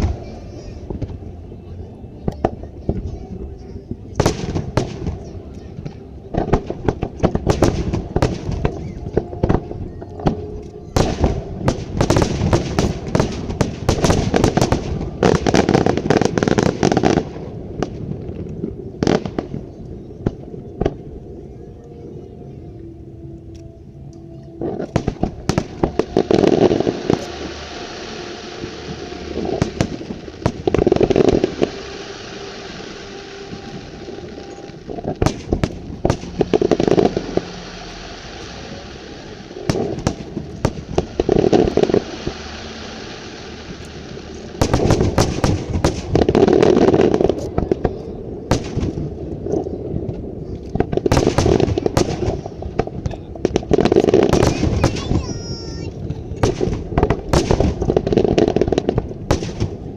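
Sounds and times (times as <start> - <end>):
fireworks steady crackle: 0.0 - 59.9
fireworks popping bangs: 2.3 - 21.0, 24.6 - 59.9.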